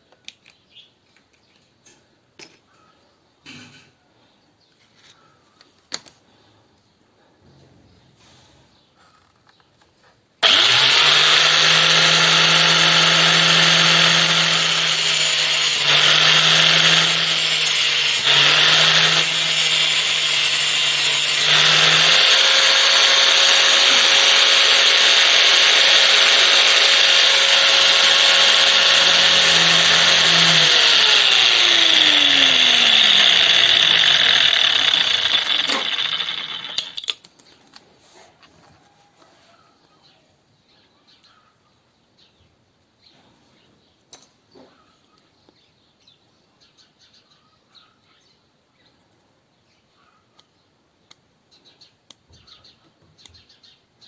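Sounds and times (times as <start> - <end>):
electric power tool running: 10.4 - 37.0.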